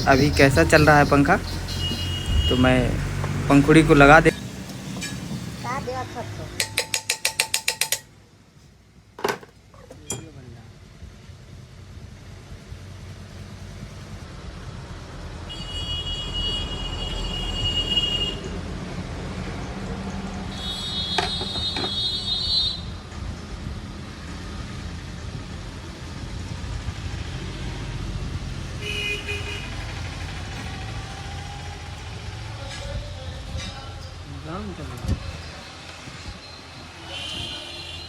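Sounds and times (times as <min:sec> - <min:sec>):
vehicle horns tooting: 0:00.0 - 0:03.7, 0:15.5 - 0:18.6, 0:20.5 - 0:23.0, 0:28.8 - 0:30.1, 0:37.0 - 0:38.0.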